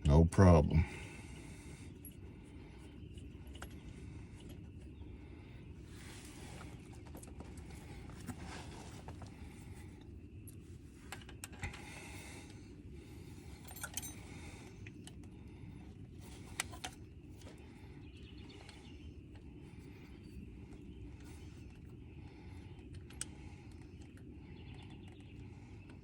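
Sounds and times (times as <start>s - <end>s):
low background rumble: 0.0s - 26.0s
metallic clicks of tools and bolts: 13.6s - 14.3s.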